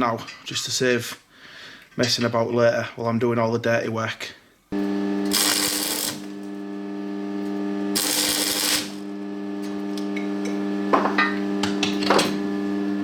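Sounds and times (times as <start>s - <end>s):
welder humming: 4.7s - 13.0s
sharp crackles: 4.8s - 6.6s, 7.4s - 9.8s
welding arc hiss: 4.8s - 13.0s.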